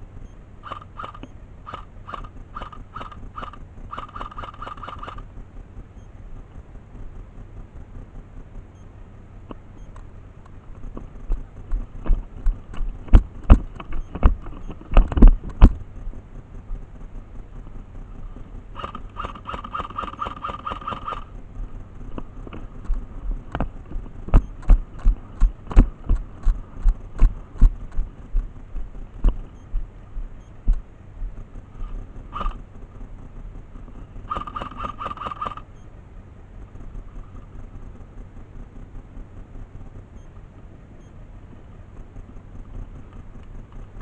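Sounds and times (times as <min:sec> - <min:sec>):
electric rifle rattling fire: 0:00.6 - 0:05.3, 0:18.7 - 0:21.4, 0:34.3 - 0:35.7.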